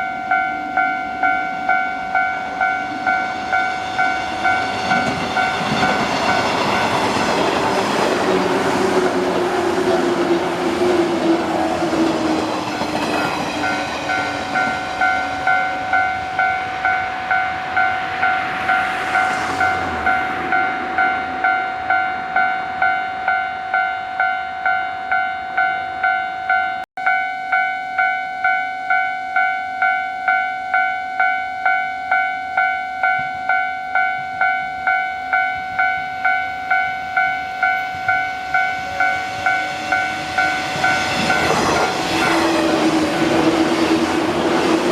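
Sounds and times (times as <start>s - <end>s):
level crossing bell ringing: 0.0s - 7.0s, 13.6s - 41.5s
electric train passing: 0.0s - 26.7s, 28.9s - 44.9s.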